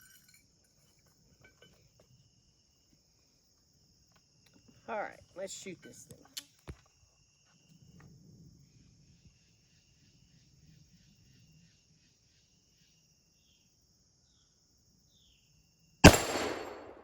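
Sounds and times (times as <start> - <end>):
crickets chirping: 0.0 - 17.0
pistol shot: 16.0 - 17.0.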